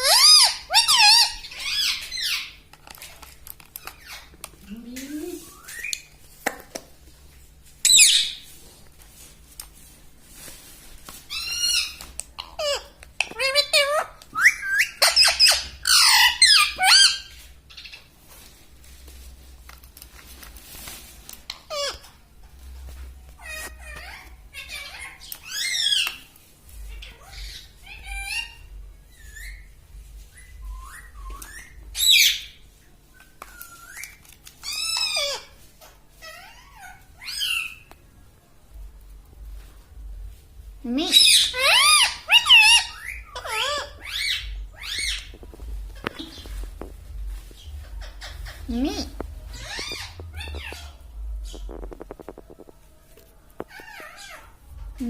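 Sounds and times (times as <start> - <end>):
parakeet screeching: 0.0 - 2.6, 11.3 - 18.0, 23.4 - 26.3, 26.9 - 29.6, 33.8 - 35.6, 36.2 - 37.9, 41.1 - 46.6, 47.6 - 52.3, 53.6 - 54.6
parakeet whistled calls: 13.7 - 17.9, 30.3 - 32.6.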